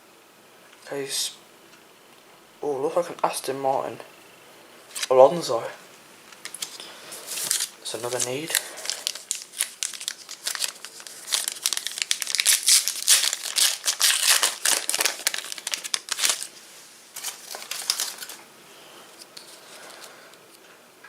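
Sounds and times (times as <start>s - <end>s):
plastic wrapper crinkling and tearing: 6.3s - 18.4s.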